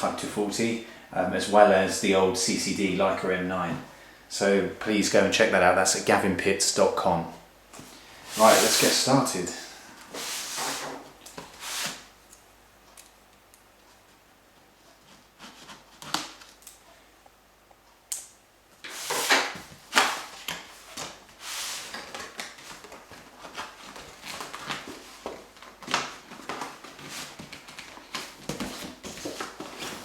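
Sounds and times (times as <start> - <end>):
cardboard rubbing and scraping: 26.3 - 30.0.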